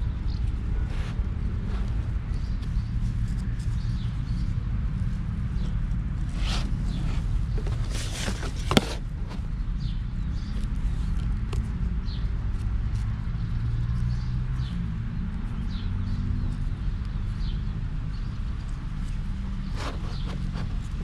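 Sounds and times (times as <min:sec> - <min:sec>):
rustling handling noises: 0:05.5 - 0:09.6, 0:19.0 - 0:21.0.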